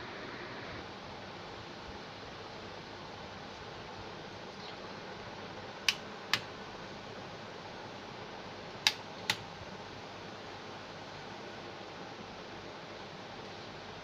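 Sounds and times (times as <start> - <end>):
sharp clicks: 5.9 - 6.5, 8.8 - 9.4.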